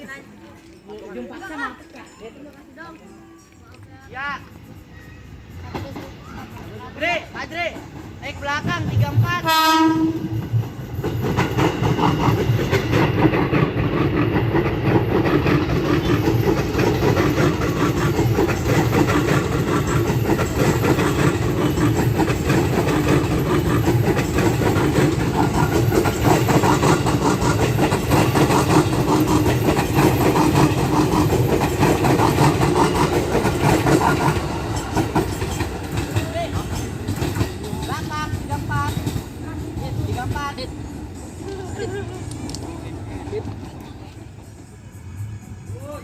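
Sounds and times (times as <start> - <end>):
train wheels clattering over rail joints: 10.4 - 44.6.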